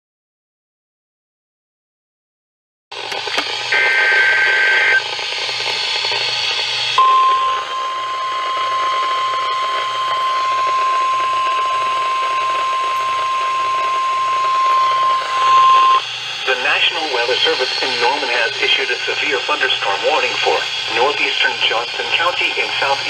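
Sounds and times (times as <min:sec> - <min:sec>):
radio static hiss: 0:03.0 - 0:23.0
steady warning alarm tone: 0:03.3 - 0:23.0
two-pitch data tones: 0:07.0 - 0:23.0.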